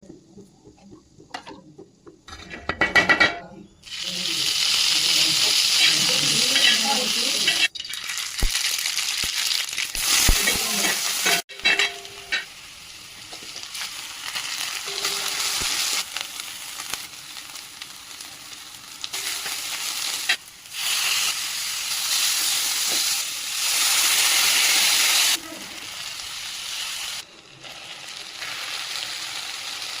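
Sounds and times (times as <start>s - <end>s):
okra sizzling in hot oil: 3.8s - 30.0s.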